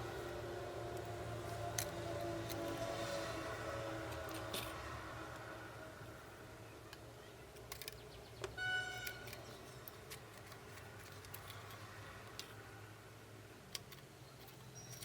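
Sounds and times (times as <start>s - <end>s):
small tools clicking on phone parts: 0.2s - 3.3s, 6.9s - 12.7s, 13.6s - 15.0s.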